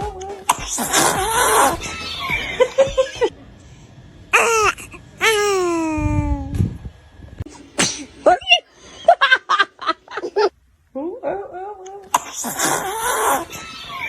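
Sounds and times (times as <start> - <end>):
newborn baby crying: 0.8 - 2.0, 4.4 - 6.5
laughter: 2.4 - 3.3, 8.9 - 10.5.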